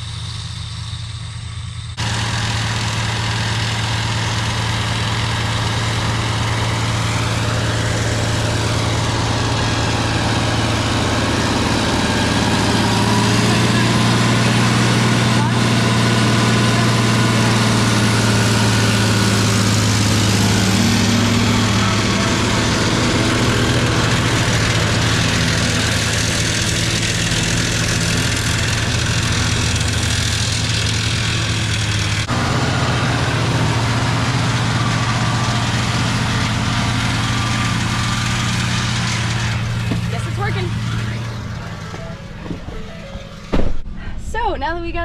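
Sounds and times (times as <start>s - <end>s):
tractor engine idling: 0.0s - 45.0s.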